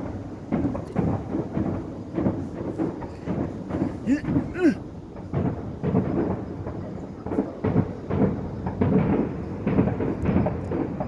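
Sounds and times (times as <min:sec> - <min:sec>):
distant fireworks booms: 0:00.0 - 0:11.0.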